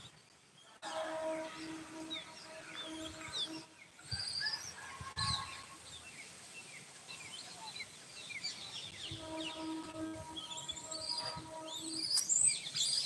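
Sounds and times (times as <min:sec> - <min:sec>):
high chirping calls: 0:08.4 - 0:13.0.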